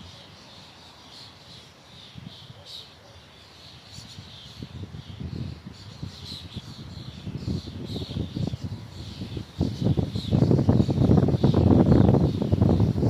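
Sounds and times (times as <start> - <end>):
small birds chirping: 0.0 - 13.0
gusty wind rumble: 4.5 - 13.0.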